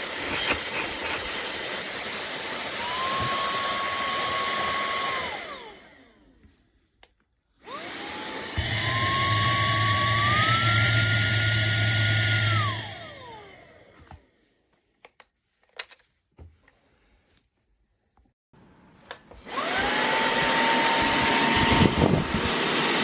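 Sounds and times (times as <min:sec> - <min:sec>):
handheld vacuum cleaner motor whine: 0:00.0 - 0:06.5, 0:07.6 - 0:14.2, 0:19.1 - 0:23.0.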